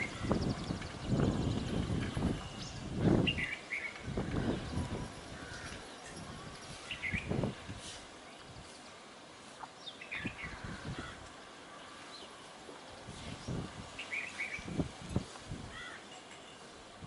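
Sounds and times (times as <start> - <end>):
starlings chirping and whistling: 2.4 - 4.0, 14.0 - 14.8.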